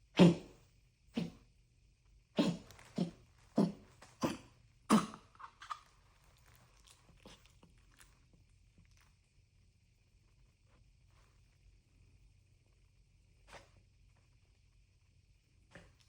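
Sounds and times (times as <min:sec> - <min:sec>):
person coughing: 0:02.4 - 0:05.3.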